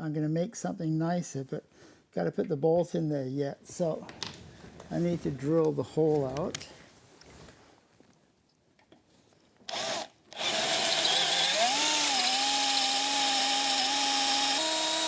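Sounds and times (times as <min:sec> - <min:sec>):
electric drill whining: 0:09.7 - 0:15.0.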